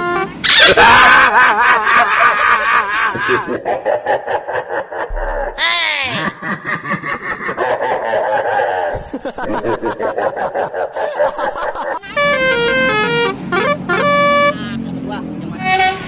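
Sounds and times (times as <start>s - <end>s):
multi-tone bus horn melody: 0.0s - 0.5s, 12.0s - 16.0s.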